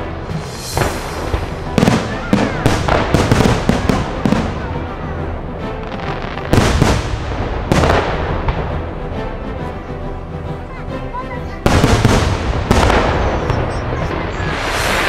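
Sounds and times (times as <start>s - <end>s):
background music: 0.0s - 15.0s
fireworks bangs: 0.3s - 4.9s, 5.8s - 8.9s, 11.6s - 15.0s.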